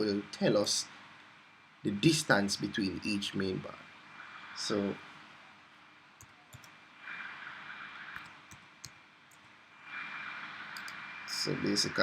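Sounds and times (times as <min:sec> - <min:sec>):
low steady hiss: 0:00.0 - 0:12.0
computer mouse clicks: 0:06.2 - 0:06.8, 0:08.1 - 0:09.5, 0:10.7 - 0:11.0.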